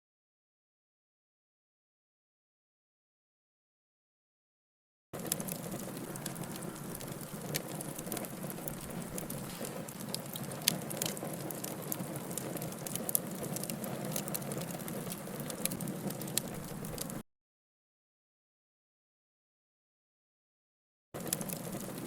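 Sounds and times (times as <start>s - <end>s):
campfire crackling and popping: 5.2s - 17.2s, 21.2s - 22.0s
hiss of flames: 5.2s - 17.2s.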